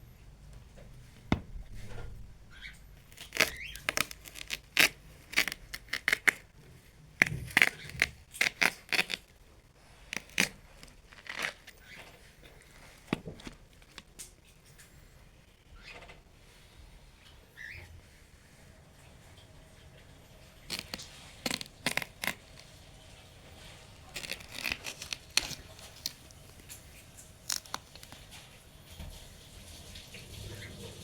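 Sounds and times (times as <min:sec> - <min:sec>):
watermelon cracking: 0:03.0 - 0:14.6, 0:20.6 - 0:22.8, 0:23.6 - 0:28.5.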